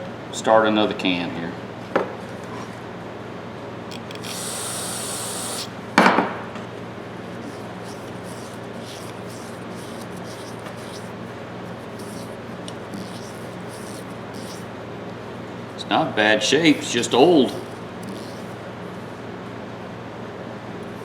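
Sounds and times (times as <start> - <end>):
aerosol can spraying: 3.9 - 5.7, 7.4 - 11.1, 11.8 - 12.3, 12.9 - 14.6, 17.5 - 18.5
rubbing and scrubbing of parts: 7.3 - 14.6, 16.8 - 18.6.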